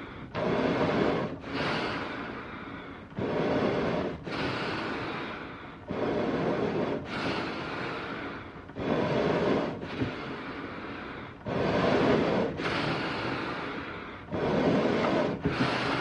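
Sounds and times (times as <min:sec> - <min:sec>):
animal breathing: 0:00.0 - 0:16.0.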